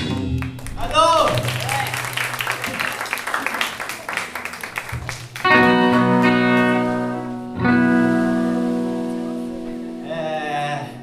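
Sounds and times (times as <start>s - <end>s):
electric guitar chords ringing: 5.4s - 11.0s.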